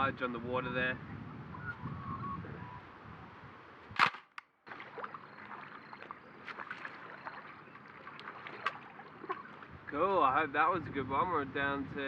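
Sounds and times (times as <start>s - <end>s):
outdoor ambience: 1.2s - 10.3s.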